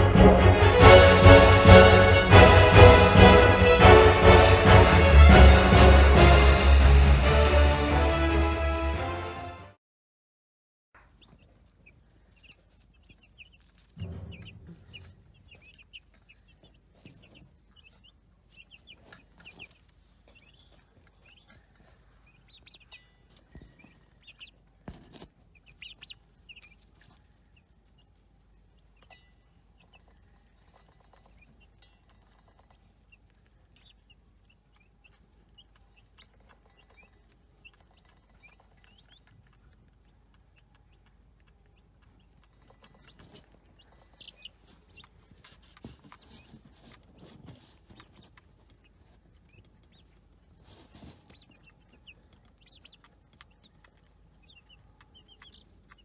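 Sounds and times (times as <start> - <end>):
chicks peeping: 0.0 - 2.2, 11.0 - 56.0
sharp knocks: 14.0 - 15.2.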